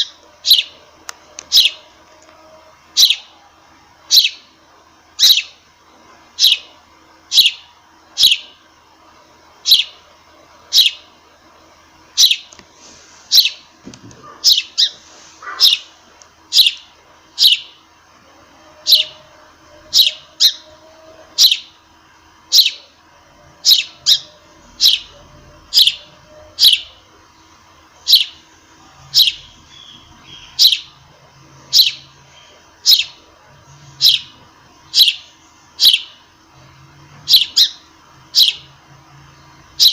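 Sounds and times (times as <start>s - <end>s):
sparrow chirping: 0.0s - 3.4s, 4.1s - 4.5s, 5.2s - 5.6s, 6.3s - 8.6s, 9.6s - 10.0s, 10.7s - 11.1s, 12.1s - 12.5s, 13.3s - 13.7s, 14.4s - 17.8s, 18.7s - 21.8s, 22.5s - 23.0s, 23.6s - 27.0s, 28.0s - 31.0s, 31.6s - 36.2s, 37.2s - 38.8s
faint steady hum: 0.0s - 39.9s.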